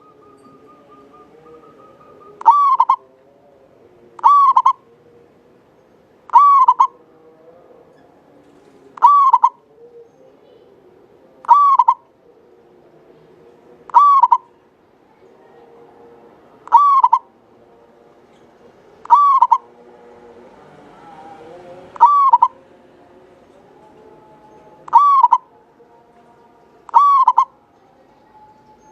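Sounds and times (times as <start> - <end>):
dove cooing: 0.0 - 3.1, 4.2 - 5.0, 6.3 - 7.1, 9.0 - 12.9, 13.9 - 14.6, 16.6 - 17.4, 19.0 - 20.3, 21.9 - 22.7, 24.8 - 25.6, 26.9 - 27.6.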